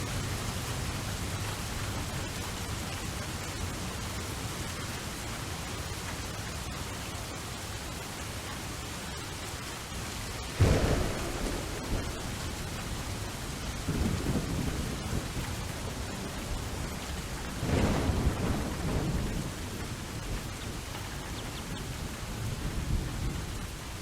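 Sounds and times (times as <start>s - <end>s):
steady rain falling: 0.0s - 24.0s
thunder clap rumbling: 10.6s - 24.0s.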